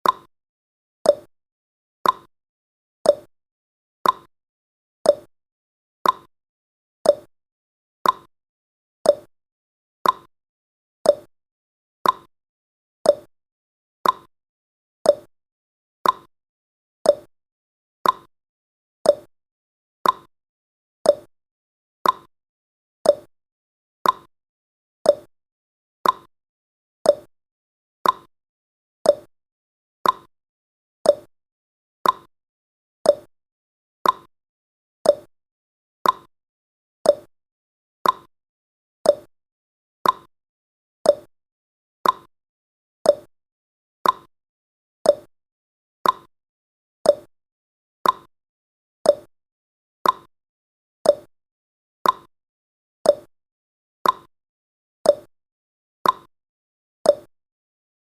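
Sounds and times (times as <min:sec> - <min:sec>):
clock ticking: 0:38.0 - 0:38.3, 0:40.0 - 0:40.3.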